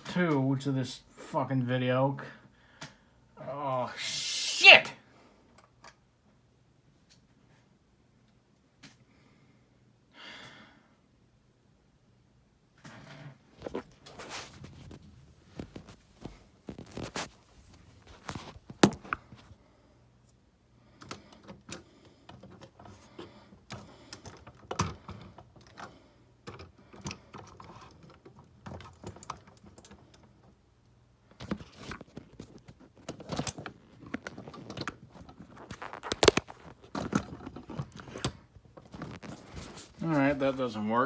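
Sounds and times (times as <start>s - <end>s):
cards and cardboard rustling: 31.4s - 40.6s.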